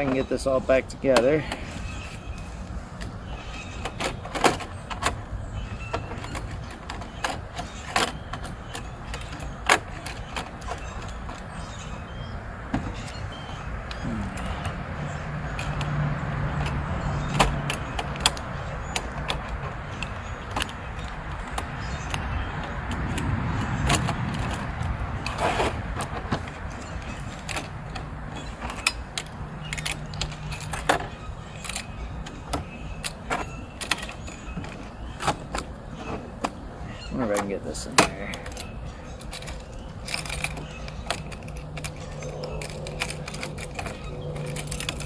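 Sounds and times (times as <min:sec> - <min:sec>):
metal tools clicking and rattling: 0:16.6 - 0:35.7, 0:38.2 - 0:45.0.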